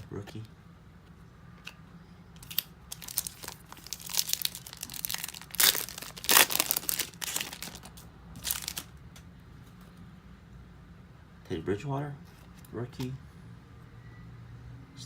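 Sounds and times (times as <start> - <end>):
foil wrapper crinkling: 2.4 - 8.9.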